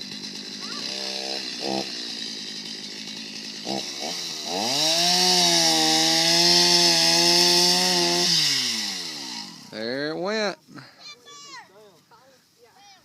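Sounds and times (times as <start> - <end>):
chainsaw revving and cutting: 0.0 - 10.2.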